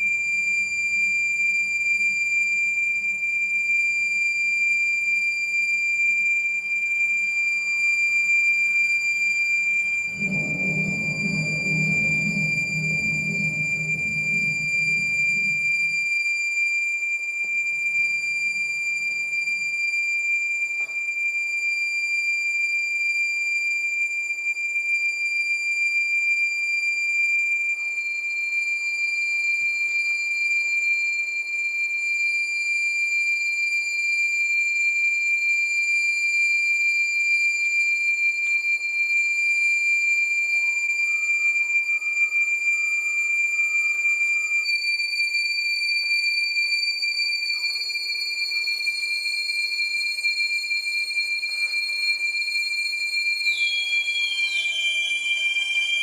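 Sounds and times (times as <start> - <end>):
low electronic tone: 9.5 - 16.1
high-pitched electronic drone: 9.6 - 16.1.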